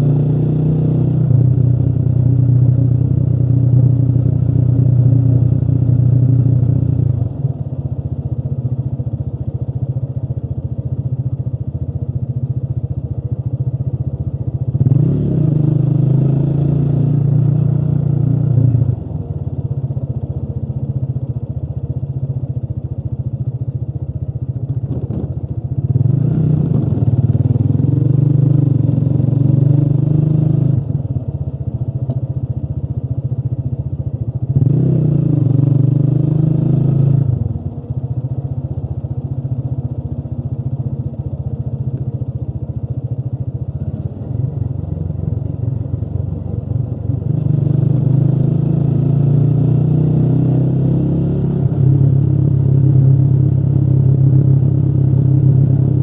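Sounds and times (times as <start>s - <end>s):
motorcycle engine accelerating: 0.0s - 9.0s, 14.5s - 21.1s, 24.3s - 56.0s.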